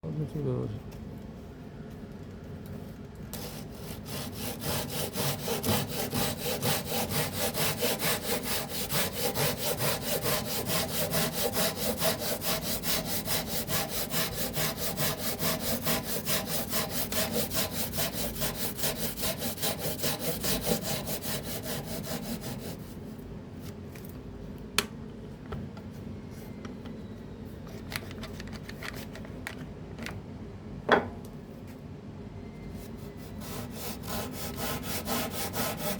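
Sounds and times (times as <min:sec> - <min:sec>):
hand saw cutting wood: 0:03.4 - 0:22.9, 0:33.4 - 0:35.9.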